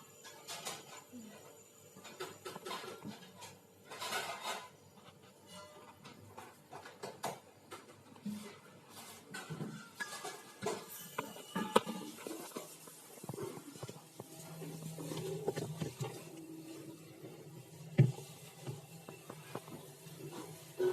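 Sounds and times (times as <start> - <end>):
hard objects clinking and knocking: 9.3 - 16.4.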